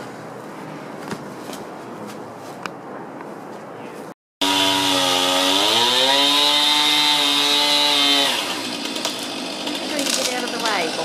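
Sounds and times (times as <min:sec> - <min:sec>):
chainsaw cutting at high revs: 0:04.4 - 0:11.0.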